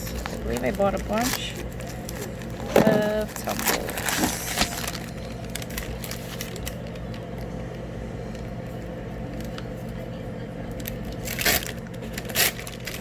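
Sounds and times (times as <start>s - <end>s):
packaging crackling: 0.0s - 7.5s, 10.7s - 13.0s
steady low hum: 0.0s - 13.0s.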